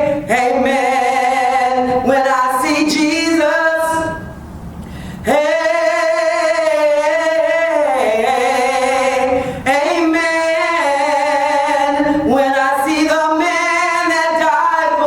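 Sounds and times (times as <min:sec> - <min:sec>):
woman singing a gospel song: 0:00.0 - 0:04.4, 0:05.2 - 0:15.0.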